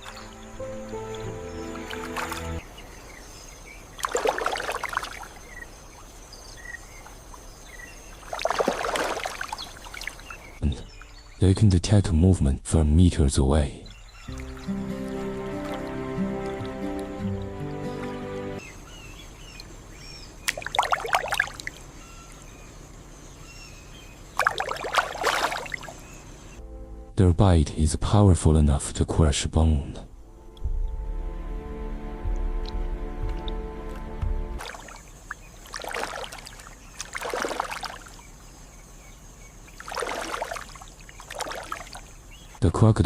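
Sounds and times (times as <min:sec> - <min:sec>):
water splashing: 0:00.0 - 0:02.9, 0:03.8 - 0:06.2, 0:06.8 - 0:10.6, 0:14.2 - 0:18.6, 0:20.4 - 0:21.9, 0:24.3 - 0:26.3, 0:32.3 - 0:38.5, 0:39.6 - 0:42.4.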